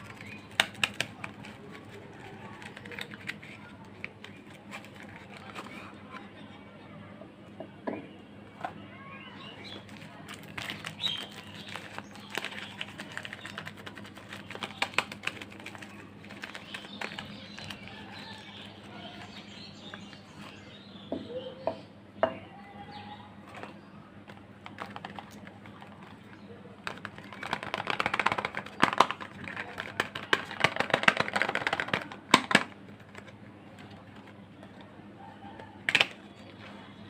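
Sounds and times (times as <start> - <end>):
wrapper crinkling: 0.0 - 6.2, 9.6 - 20.5, 23.5 - 34.9.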